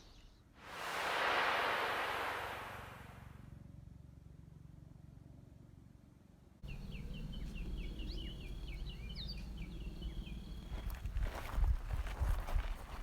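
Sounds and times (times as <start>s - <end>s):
steady low rumble: 0.6s - 3.4s
bird chirping: 6.6s - 11.0s.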